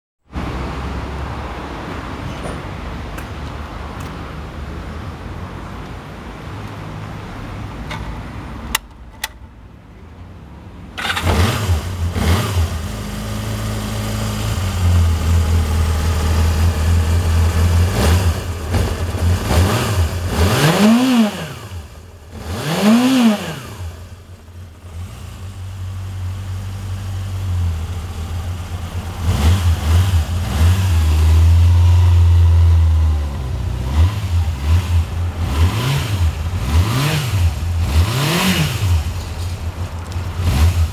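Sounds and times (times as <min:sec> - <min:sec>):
motorcycle engine starting and revving: 0:10.9 - 0:40.9.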